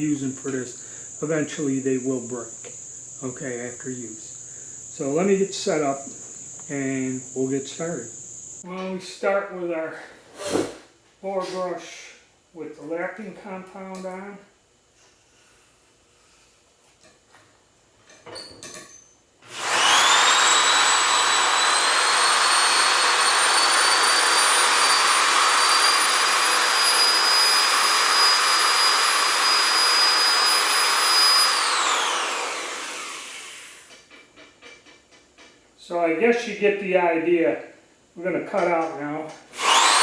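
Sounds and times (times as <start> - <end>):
electric drill motor whine: 19.5 - 34.0, 39.5 - 40.0.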